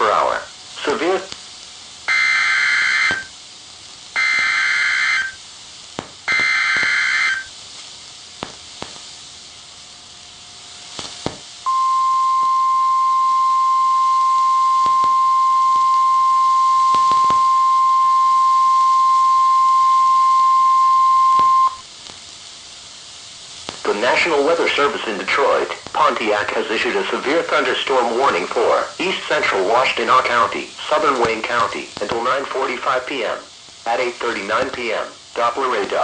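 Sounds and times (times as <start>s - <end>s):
radio hiss: 0.0s - 36.0s
steady high alarm tone: 2.1s - 3.3s, 4.2s - 5.4s, 6.3s - 7.5s, 11.7s - 21.8s.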